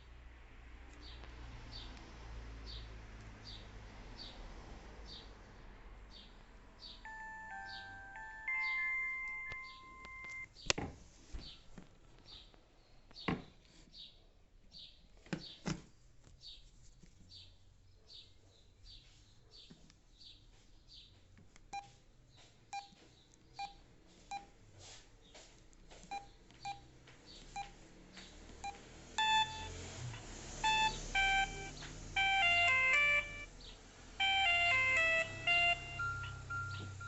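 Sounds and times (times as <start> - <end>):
synthesized ringtone melody: 7.0 - 10.4, 29.2 - 29.8, 30.6 - 33.5, 34.2 - 37.0
short phone beeps: 7.1 - 10.5, 29.2 - 29.7, 30.6 - 33.4, 34.2 - 37.0
faint phone chirps: 29.2 - 29.8, 30.6 - 33.5, 34.2 - 37.0.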